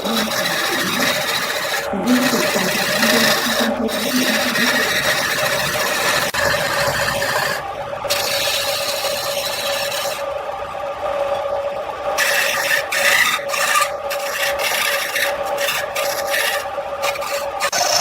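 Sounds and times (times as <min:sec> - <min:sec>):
lathe tool scraping wood: 0:00.0 - 0:10.3, 0:12.2 - 0:18.0
lathe motor hum: 0:00.0 - 0:18.0.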